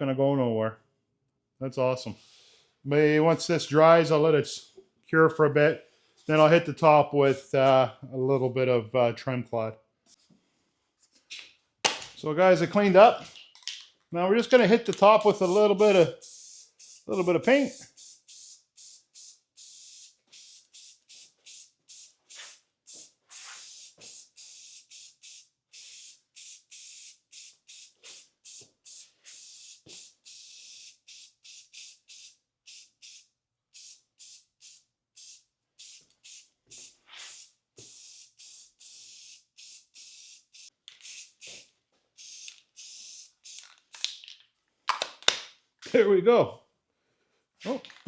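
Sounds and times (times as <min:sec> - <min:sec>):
spray paint hissing bursts: 0:15.0 - 0:43.8.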